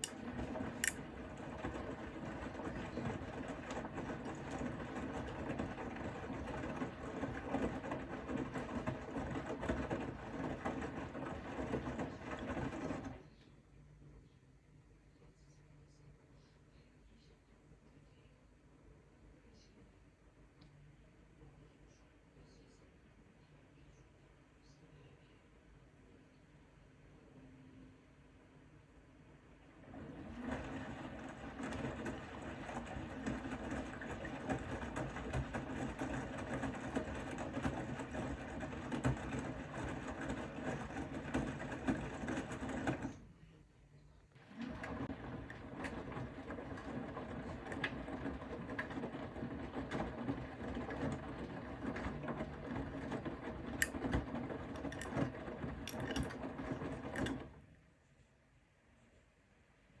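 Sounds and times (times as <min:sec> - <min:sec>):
washing machine motor humming: 0:00.0 - 0:13.4, 0:29.2 - 0:43.3, 0:44.3 - 0:57.9.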